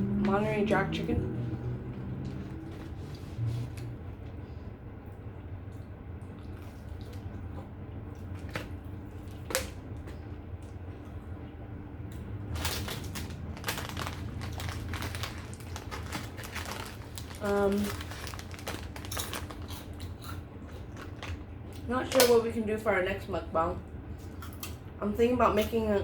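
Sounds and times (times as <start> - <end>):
steady low hum: 0.0 - 26.0
wet chewing and mouth smacking: 5.1 - 11.3
crisp crackles: 12.5 - 22.4.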